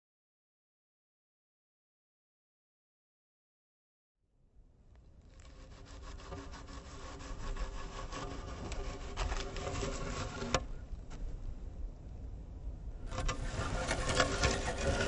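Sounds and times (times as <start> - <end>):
rough rasping rubbing: 5.3 - 10.8, 13.1 - 15.0.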